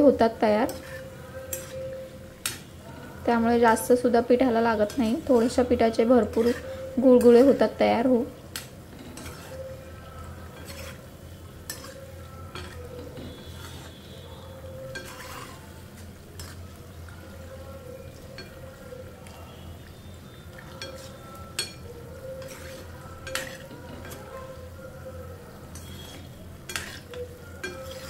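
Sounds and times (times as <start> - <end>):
fritters deep-frying in hot oil: 0.0 - 24.1, 24.7 - 28.0
metal utensil clinking on pan: 0.6 - 2.7, 4.8 - 7.6, 8.5 - 9.7, 11.6 - 13.8, 14.7 - 15.6, 16.3 - 16.7, 18.2 - 18.8, 20.7 - 24.6, 25.7 - 28.0.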